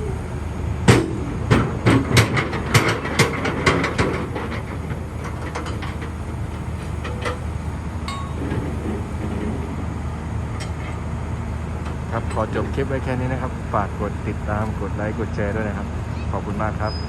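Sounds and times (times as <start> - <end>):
excavator diesel engine running: 0.0 - 16.7
sharp metallic clanks and knocks: 0.9 - 9.9, 10.5 - 11.1, 11.8 - 13.1.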